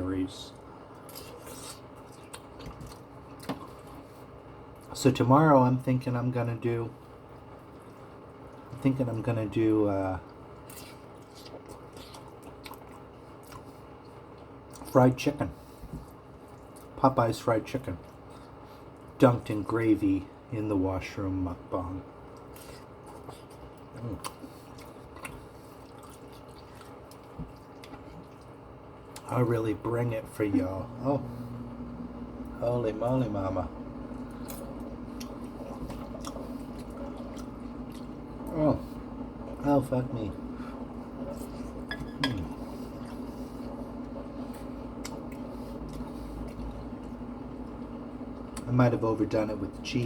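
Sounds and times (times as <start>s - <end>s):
steady low hum: 0.0s - 50.0s
person chewing wetly: 0.8s - 4.9s, 10.2s - 14.9s, 22.2s - 29.3s, 34.1s - 39.6s, 40.6s - 48.7s.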